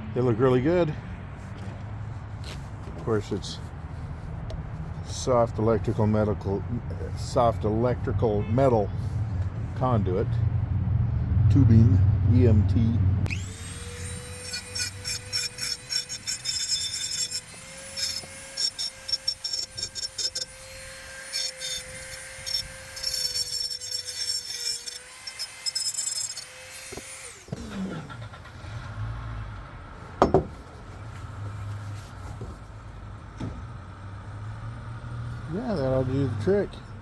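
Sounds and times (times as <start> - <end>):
rotary tool spinning down: 13.3 - 28.2
rotary tool grinding metal: 13.3 - 28.3.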